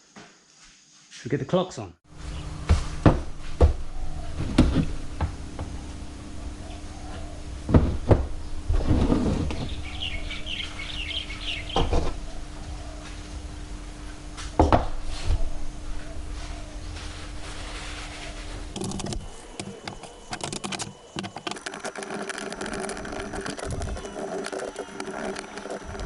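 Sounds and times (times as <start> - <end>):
faint steady hum: 2.1 - 26.0
small bird chirping: 9.6 - 13.0
knocks and clatter of parts: 18.8 - 26.0.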